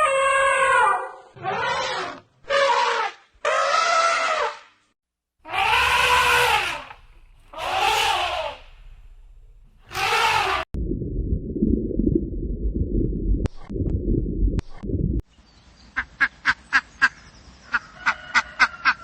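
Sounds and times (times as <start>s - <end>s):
bird calling: 5.5s - 9.0s
loud low rumbling: 5.5s - 15.2s.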